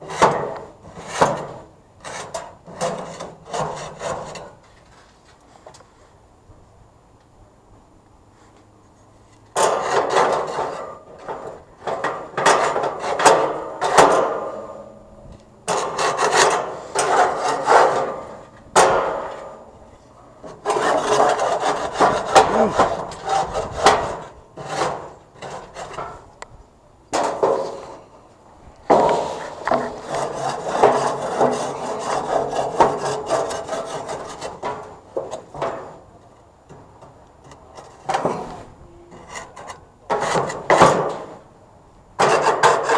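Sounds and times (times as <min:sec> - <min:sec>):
grill being scraped: 0:00.0 - 0:05.1, 0:15.7 - 0:19.4, 0:20.5 - 0:26.3, 0:29.0 - 0:34.9, 0:42.2 - 0:42.9.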